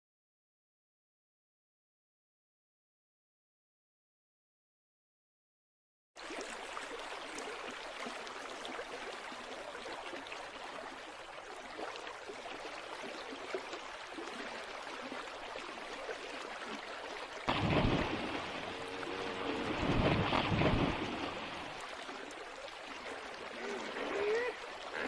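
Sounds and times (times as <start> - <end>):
water rushing: 6.2 - 25.0.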